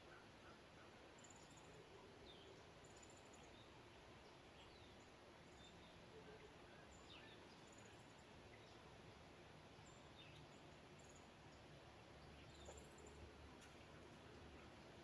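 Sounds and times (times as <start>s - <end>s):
outdoor background hush: 0.0s - 15.0s.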